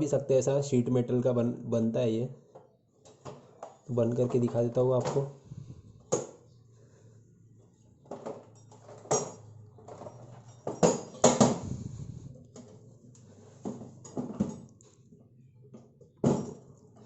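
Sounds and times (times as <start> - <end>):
metal tool box clanking: 8.1 - 11.6.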